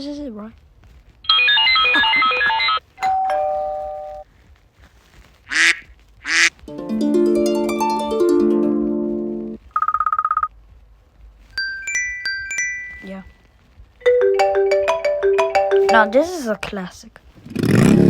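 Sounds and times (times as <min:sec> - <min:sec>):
ding-dong doorbell chime: 0:01.4 - 0:04.2, 0:11.6 - 0:13.1
duck quacks: 0:05.5 - 0:06.5
harp chord: 0:06.7 - 0:09.6
electronic beeping melody: 0:14.1 - 0:16.4.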